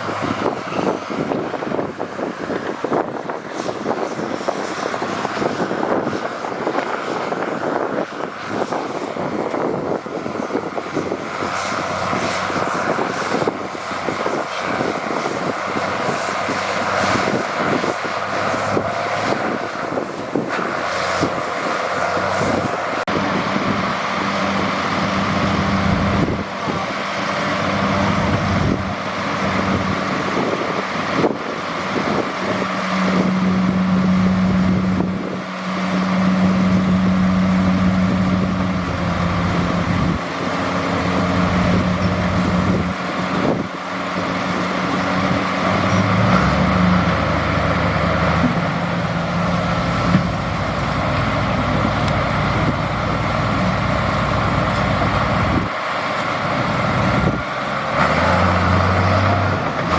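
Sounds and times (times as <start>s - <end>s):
heavy machinery diesel engine: 0.0s - 59.9s
steady low engine note: 15.8s - 59.9s.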